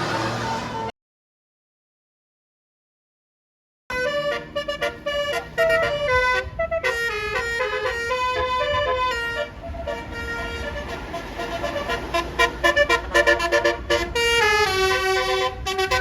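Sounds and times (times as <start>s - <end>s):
multi-tone musical bus horn: 0.0s - 0.9s, 3.9s - 16.0s
passing bus noise: 0.0s - 0.9s, 3.9s - 16.0s.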